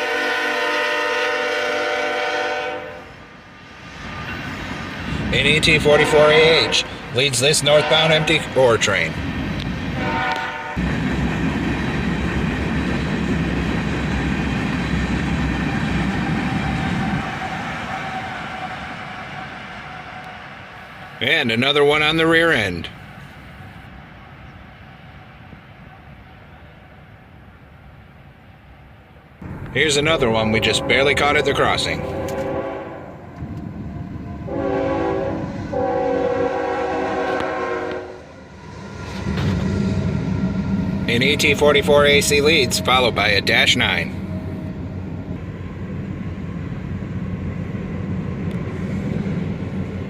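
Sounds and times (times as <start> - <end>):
locomotive air horn blasts: 0.0 - 3.2, 5.6 - 8.6, 10.0 - 10.9, 30.2 - 33.2, 34.4 - 38.3
train wheels on rails: 0.0 - 27.6, 29.4 - 50.0
diesel locomotive rumble: 0.0 - 50.0.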